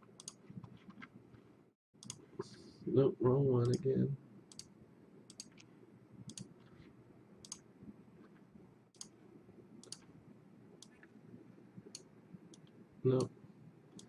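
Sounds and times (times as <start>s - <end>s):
computer mouse clicks: 0.2s - 1.0s, 2.0s - 2.2s, 4.5s - 4.7s, 5.3s - 6.5s, 7.4s - 7.6s, 9.0s - 9.2s, 9.8s - 10.1s, 10.8s - 11.1s.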